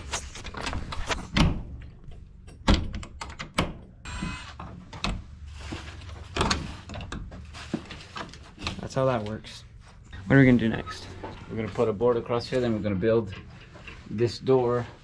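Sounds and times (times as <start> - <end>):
door locks clacking and knocking: 2.3 - 4.0
door squeak: 4.1 - 4.6.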